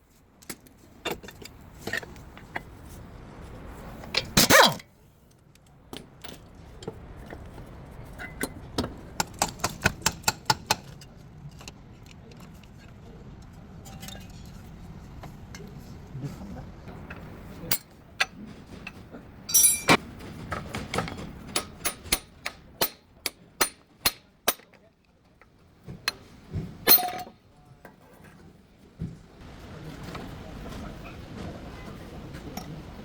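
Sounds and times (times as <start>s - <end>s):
metal tools clinking on metal: 17.0s - 20.0s, 26.8s - 27.4s
loud ringing metal hits: 19.5s - 20.0s.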